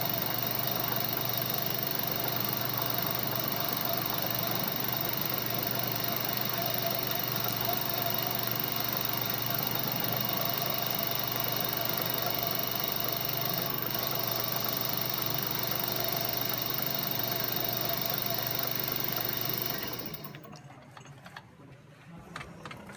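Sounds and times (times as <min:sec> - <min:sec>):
lathe motor humming: 0:00.0 - 0:20.5
faint clicks: 0:00.0 - 0:21.4.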